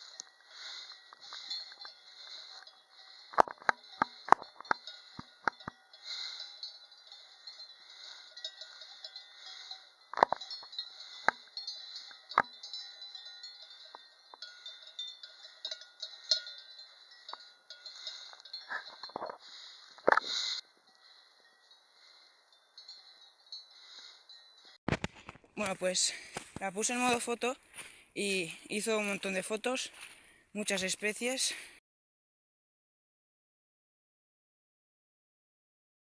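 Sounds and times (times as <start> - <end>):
metal bell clanking: 0.0 - 19.4.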